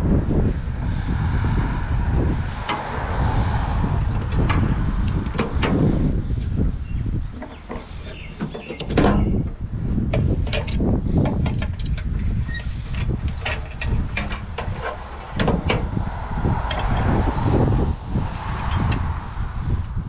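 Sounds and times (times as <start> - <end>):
low rumble: 0.0 - 8.0, 9.0 - 20.0
handling noise: 7.2 - 16.0.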